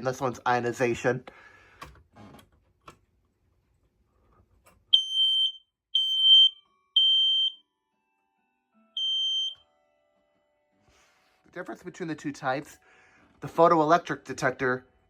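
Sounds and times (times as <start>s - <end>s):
smoke alarm beeping: 4.9s - 7.6s, 9.0s - 9.7s.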